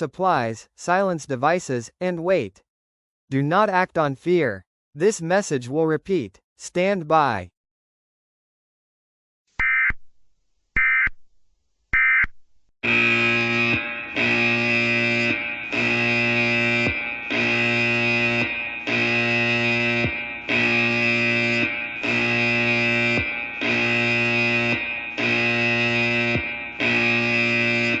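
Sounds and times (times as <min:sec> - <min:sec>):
harsh distorted buzzing tone: 0:12.8 - 0:28.0.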